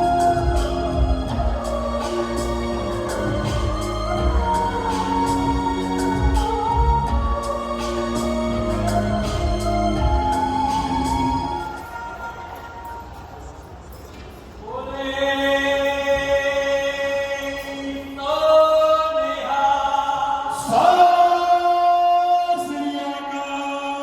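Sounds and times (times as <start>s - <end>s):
choir-like voices holding notes: 0.0s - 13.8s.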